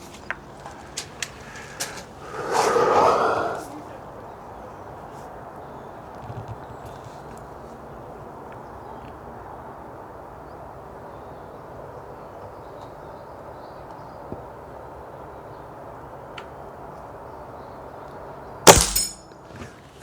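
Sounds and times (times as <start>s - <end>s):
outdoor background noise: 0.0s - 20.0s
faint clicks: 0.2s - 3.2s.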